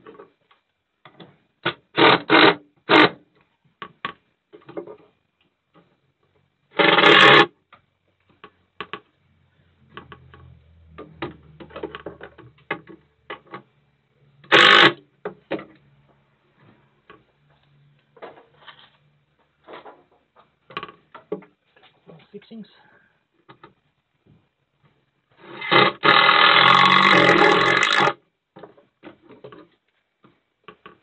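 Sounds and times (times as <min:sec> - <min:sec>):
cordless drill motor bursts: 0:01.9 - 0:03.2, 0:14.5 - 0:15.0, 0:25.4 - 0:28.2.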